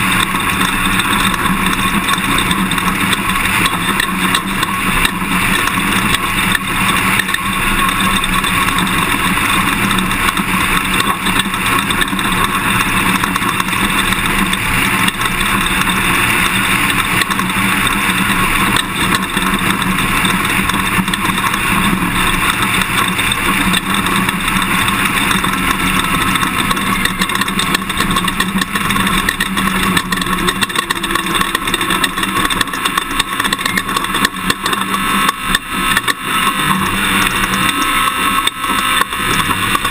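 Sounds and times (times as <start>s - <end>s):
truck engine running: 0.0s - 39.9s
tyre and chassis noise: 0.0s - 39.9s.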